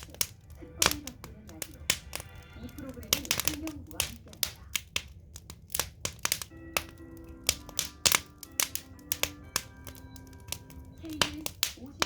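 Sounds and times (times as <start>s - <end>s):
firewood crackling: 0.0s - 12.0s
soft music: 0.0s - 12.0s.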